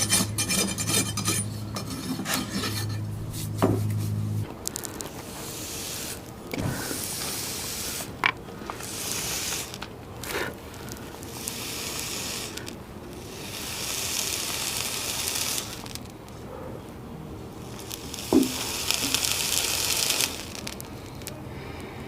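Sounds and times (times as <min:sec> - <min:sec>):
rasp hissing on hoof: 0:05.1 - 0:16.0, 0:17.6 - 0:21.3.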